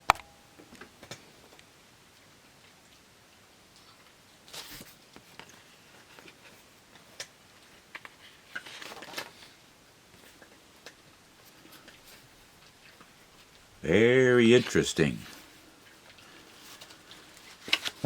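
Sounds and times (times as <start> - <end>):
paper pages rustling: 16.1 - 18.0.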